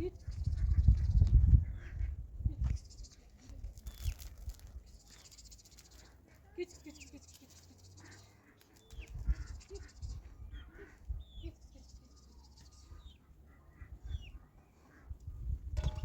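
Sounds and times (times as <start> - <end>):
birds chirping: 0.0 - 16.0
low thumps and rumble: 15.6 - 16.0.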